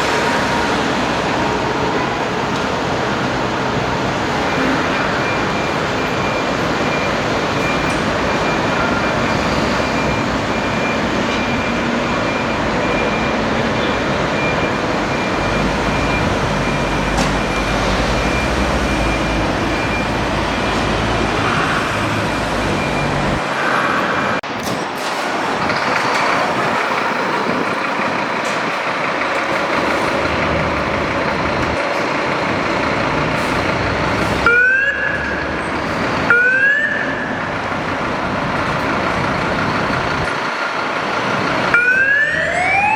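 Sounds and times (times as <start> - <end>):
fire truck diesel engines running: 0.0 - 42.9.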